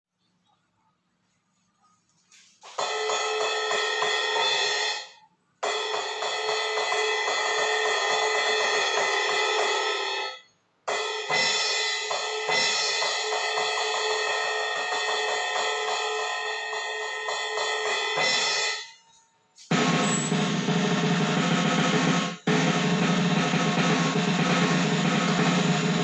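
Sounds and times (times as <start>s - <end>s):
crash cymbal ringing: 19.7s - 26.0s
quick drum strikes: 19.7s - 26.0s.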